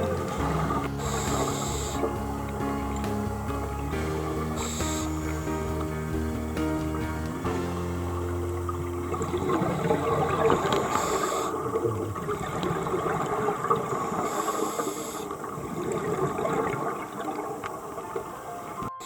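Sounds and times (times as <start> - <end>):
scuba regulator bubbling underwater: 0.0 - 18.9
inhalation hiss through regulator: 0.1 - 8.2, 10.3 - 11.7, 14.0 - 15.5.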